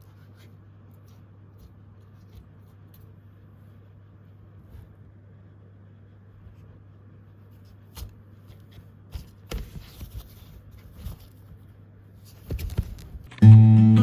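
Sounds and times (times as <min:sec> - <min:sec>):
faint low hum: 0:00.0 - 0:14.0
soft knocks and rustles: 0:07.6 - 0:13.3
acoustic guitar strum: 0:13.3 - 0:14.0.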